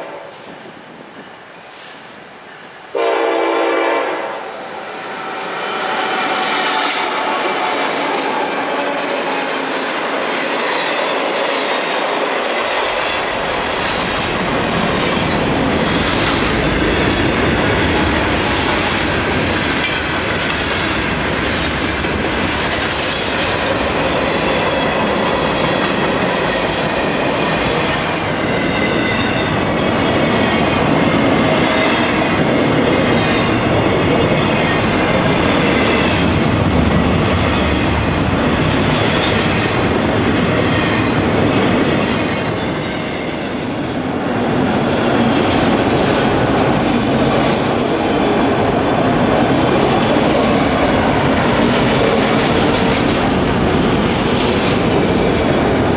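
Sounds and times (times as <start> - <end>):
deep train rumble: 0.0 - 55.9
train wheels clattering: 5.4 - 43.1, 49.8 - 55.9.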